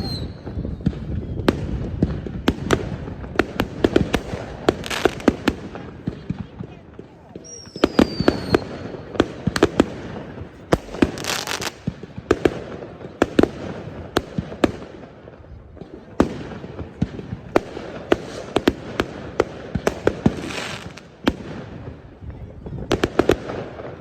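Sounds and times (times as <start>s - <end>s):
rocket falling whistle: 0.0s - 1.5s
firework bangs: 0.0s - 24.0s
firework crackling burst: 0.0s - 24.0s.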